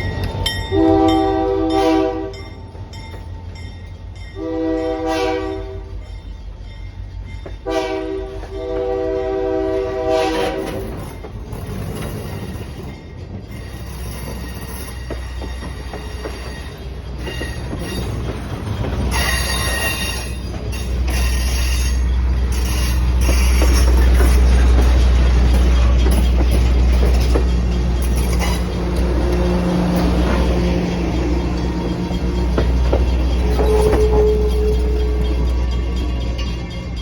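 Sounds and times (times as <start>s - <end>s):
train rolling past rumbling: 0.0s - 37.0s
train horn blasts: 0.7s - 2.5s, 4.4s - 6.0s, 7.6s - 10.9s, 33.4s - 35.2s
high wheel squeal: 13.5s - 37.0s.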